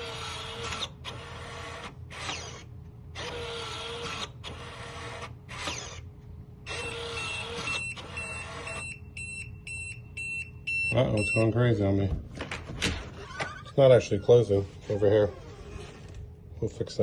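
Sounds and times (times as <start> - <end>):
deadbolt motor whirring: 0.0 - 6.1, 6.7 - 8.9
rapid high-pitched warning beeps: 6.7 - 11.6.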